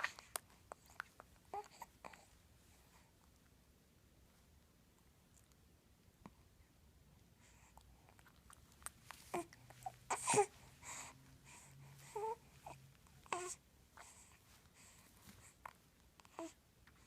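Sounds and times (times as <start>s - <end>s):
baby cooing and babbling: 1.5s - 2.3s, 9.3s - 14.3s, 16.2s - 16.6s
baby breathing: 9.3s - 15.7s.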